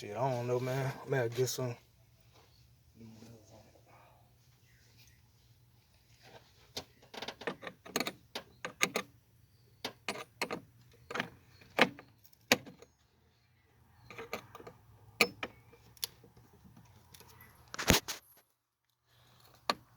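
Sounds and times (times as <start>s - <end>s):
tools clicking and clacking: 9.8s - 12.9s.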